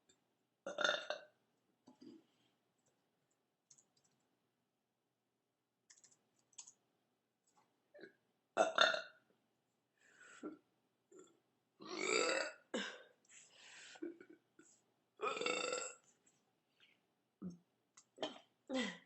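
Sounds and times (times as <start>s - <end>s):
woman burping: 0.7s - 1.3s, 8.6s - 9.1s, 11.8s - 13.1s, 15.2s - 16.0s
faint clicks: 2.8s - 4.2s, 5.9s - 6.8s.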